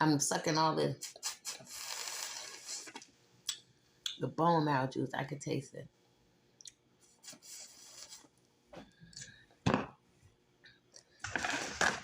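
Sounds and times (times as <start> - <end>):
mouth sucking and slurping: 1.0 - 3.0.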